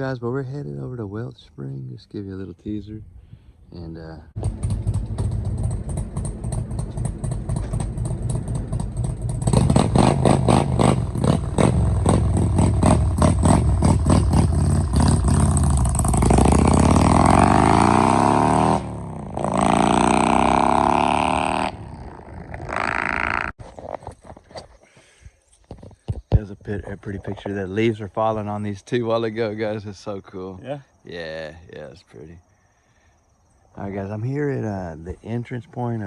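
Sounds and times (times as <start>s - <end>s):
loud vehicle engine accelerating: 4.3s - 23.5s.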